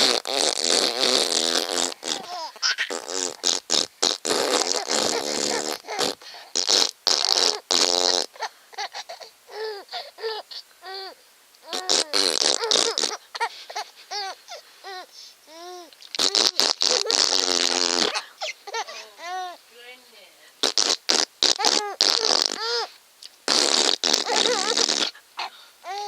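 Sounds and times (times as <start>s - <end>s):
fart sound effects: 0.0s - 8.4s, 11.6s - 13.2s, 16.1s - 18.3s, 20.6s - 22.8s, 23.5s - 25.2s
young child giggling: 18.1s - 19.3s.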